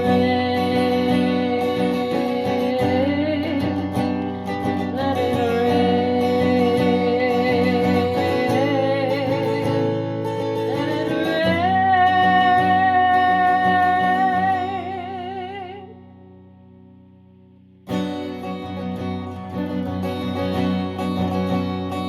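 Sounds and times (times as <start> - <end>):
person singing with vibrato: 0.0 - 16.0
acoustic guitar strumming: 0.0 - 22.0.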